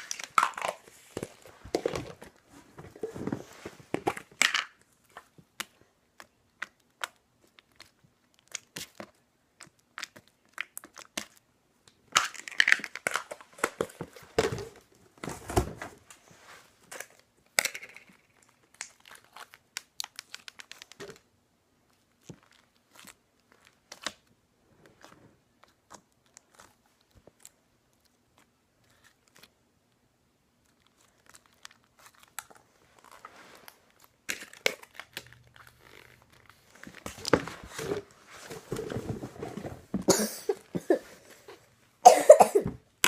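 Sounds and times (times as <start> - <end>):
slime crackling and popping: 18.3 - 21.3.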